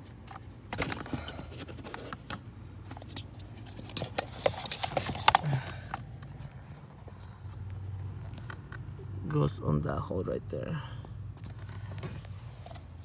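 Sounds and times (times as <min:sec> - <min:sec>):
low steady hum: 0:00.0 - 0:13.0
parts clicking and clinking: 0:02.3 - 0:06.3.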